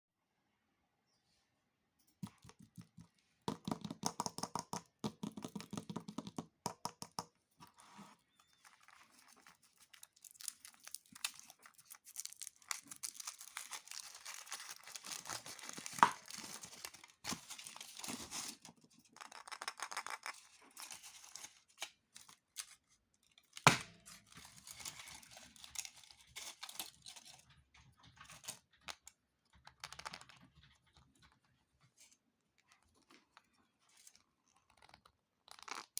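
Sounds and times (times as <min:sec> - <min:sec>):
foil wrappers crinkling and tearing: 0:08.5 - 0:18.8, 0:24.0 - 0:27.4.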